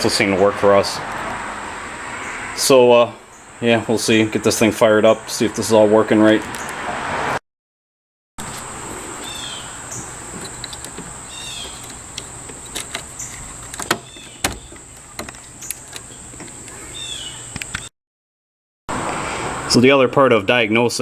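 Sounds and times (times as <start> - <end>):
engine idling with high whine: 8.4 - 17.9
sharp clicks: 8.4 - 17.9.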